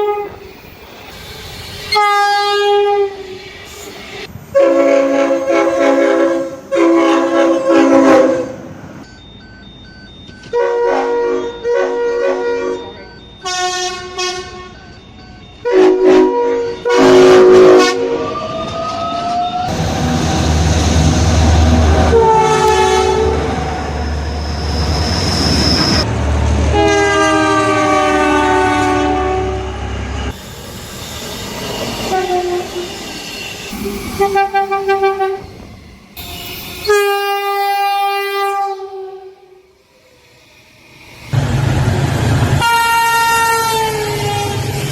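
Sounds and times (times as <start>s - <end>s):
passing train rumble: 0.0s - 44.9s
locomotive air horns: 1.9s - 8.7s, 10.5s - 14.8s, 15.6s - 18.4s, 21.7s - 24.0s, 24.8s - 30.4s, 32.0s - 33.0s, 33.7s - 35.6s, 36.2s - 39.7s, 42.5s - 44.9s.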